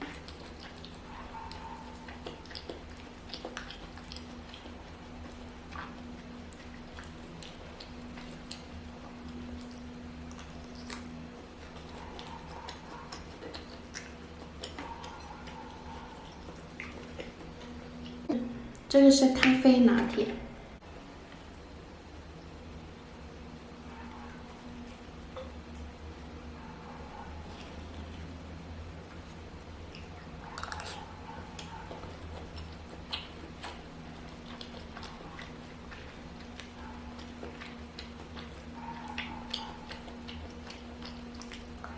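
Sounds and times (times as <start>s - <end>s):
sticky rice being chewed: 0.0s - 18.3s, 21.1s - 41.9s
low electrical hum: 0.0s - 41.9s
wet mouth clicks: 30.0s - 33.8s.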